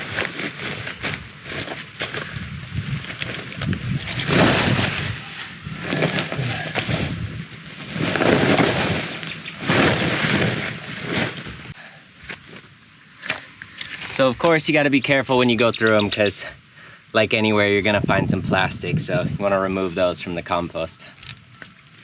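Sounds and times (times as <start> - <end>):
coconut shells rustling and clattering: 0.0 - 14.4.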